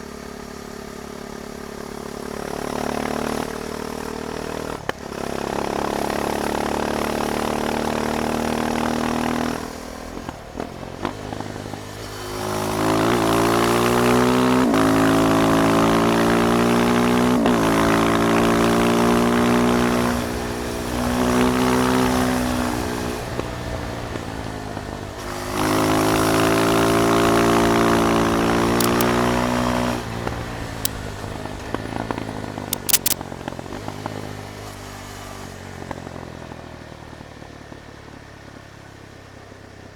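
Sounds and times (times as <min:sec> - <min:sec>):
motorcycle engine accelerating: 0:25.8 - 0:29.2, 0:30.0 - 0:33.2.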